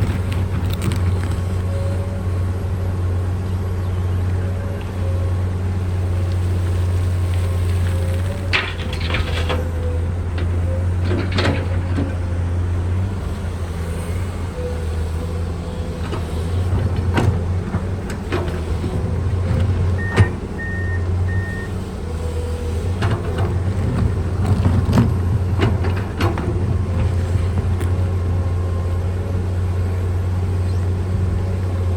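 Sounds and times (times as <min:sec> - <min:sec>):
excavator diesel engine running: 0:00.0 - 0:31.9
short beeps: 0:20.0 - 0:21.7.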